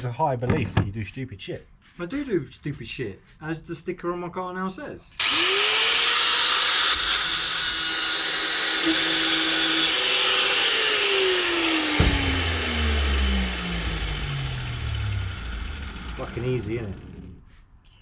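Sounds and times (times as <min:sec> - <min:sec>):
power tool whine: 0:05.2 - 0:17.4
knock: 0:12.0 - 0:12.5.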